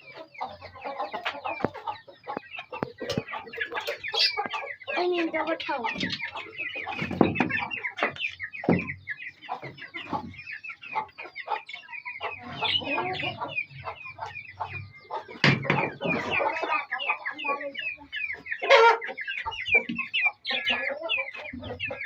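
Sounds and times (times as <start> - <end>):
chicks peeping: 0.0 - 22.0
hen clucking: 0.0 - 22.0
sharp knocks: 15.4 - 16.1.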